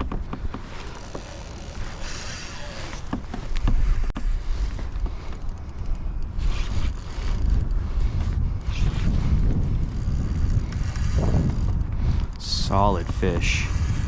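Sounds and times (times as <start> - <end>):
wind buffeting microphone: 0.0 - 14.0
fishing reel spinning: 0.8 - 3.0, 4.4 - 11.9, 12.7 - 14.0.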